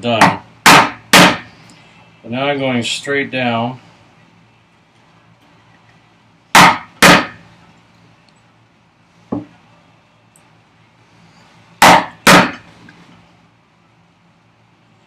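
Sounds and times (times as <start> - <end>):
chisel struck into wood: 0.2 - 1.5, 6.6 - 7.4, 11.8 - 12.6.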